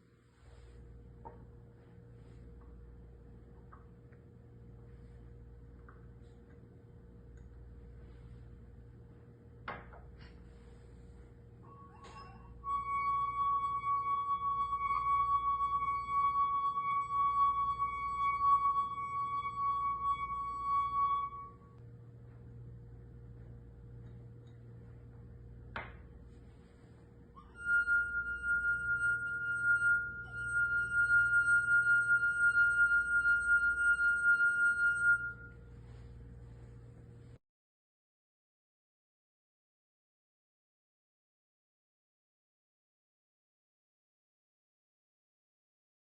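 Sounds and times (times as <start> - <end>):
singing glass rim tone: 11.6 - 21.8, 27.4 - 36.1.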